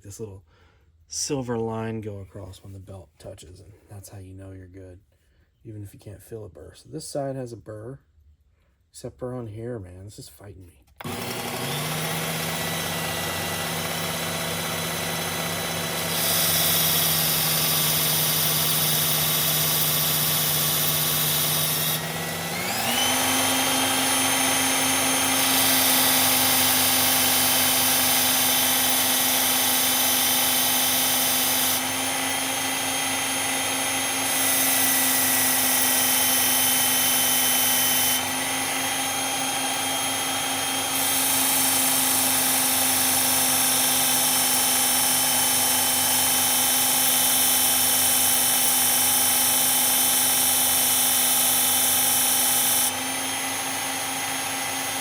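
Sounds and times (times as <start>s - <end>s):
belt sharpener motor hum: 11.0s - 55.0s.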